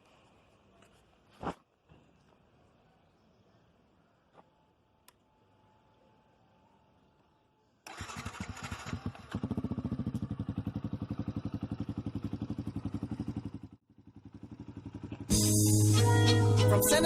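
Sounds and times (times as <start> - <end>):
motorcycle engine starting and idling: 7.8 - 16.7.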